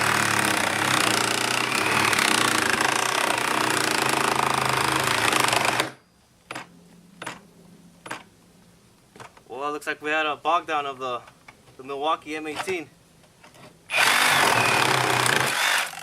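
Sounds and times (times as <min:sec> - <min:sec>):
reciprocating saw cutting wood: 0:00.0 - 0:06.0, 0:13.9 - 0:16.0.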